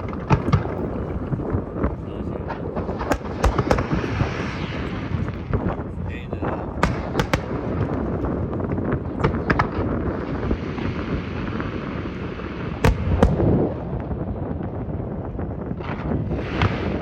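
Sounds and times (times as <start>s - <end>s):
fireworks crackle and rumble: 0.0s - 17.0s
sharp firework bangs: 0.0s - 17.0s.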